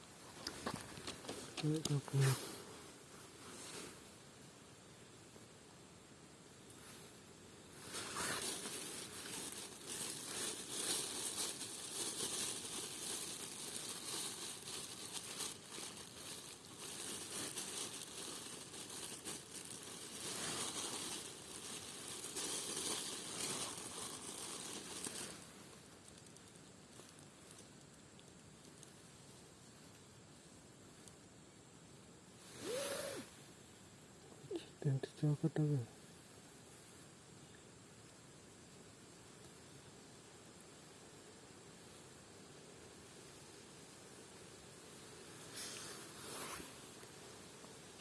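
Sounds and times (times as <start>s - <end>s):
rustling and crinkling: 0.0s - 4.2s, 6.6s - 31.3s, 44.3s - 48.0s.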